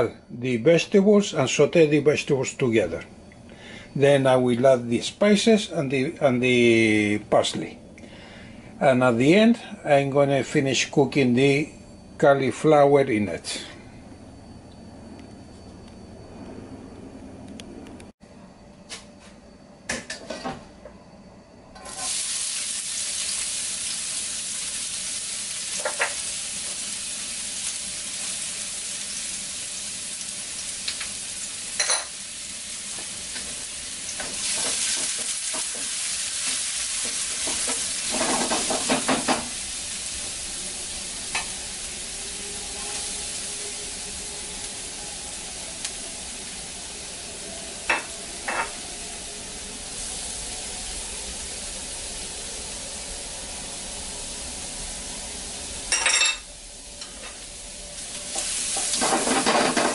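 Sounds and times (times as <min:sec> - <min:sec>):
vegetables sizzling in oil: 0:21.8 - 0:59.9.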